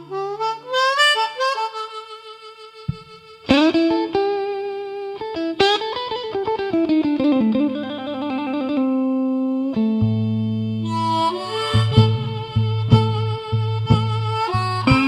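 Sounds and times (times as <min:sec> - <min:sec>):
harmonica note: 0:00.0 - 0:06.5, 0:09.8 - 0:15.0
plucked blues guitar: 0:00.0 - 0:15.0.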